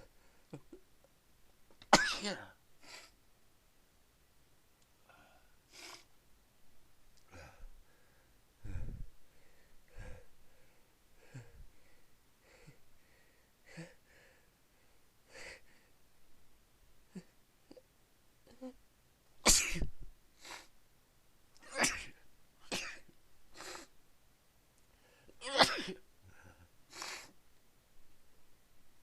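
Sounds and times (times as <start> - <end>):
sharp breaths: 7.3 - 16.0
person sneezing: 19.5 - 20.7, 21.6 - 23.0, 25.4 - 26.0.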